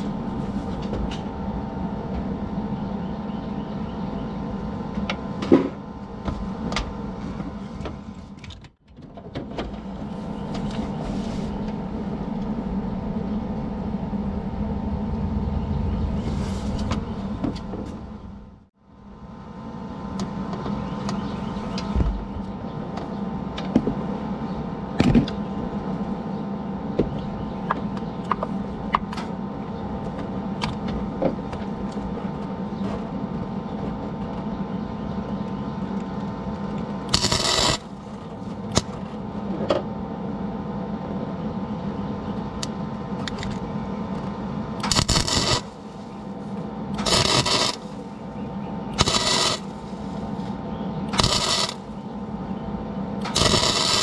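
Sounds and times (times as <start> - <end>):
machine hum: 0.0 - 54.0
hissing crackle bursts: 37.1 - 38.1, 44.8 - 46.1, 47.0 - 48.1, 49.0 - 50.4, 51.2 - 51.9, 53.3 - 54.0.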